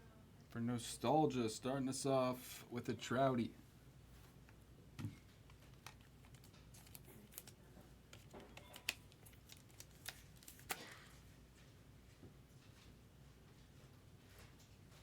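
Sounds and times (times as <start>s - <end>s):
card rustle: 5.1s - 11.2s.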